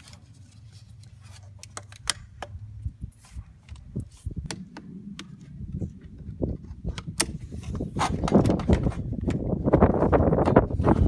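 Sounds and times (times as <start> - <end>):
low rumble: 2.5 - 8.0.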